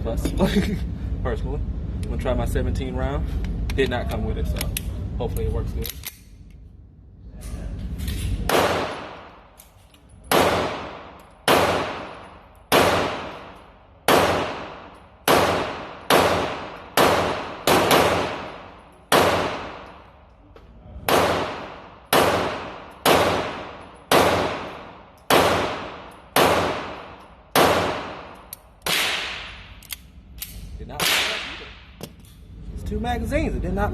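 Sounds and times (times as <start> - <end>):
pistol shots echoing: 8.5 - 9.5, 10.2 - 20.1, 21.0 - 29.7.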